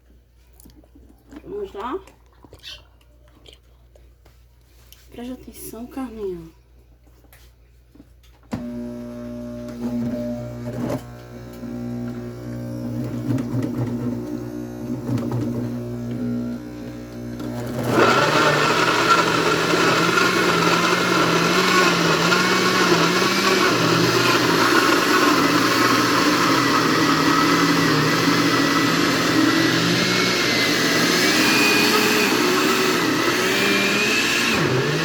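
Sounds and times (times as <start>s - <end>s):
blender running: 8.5s - 35.0s.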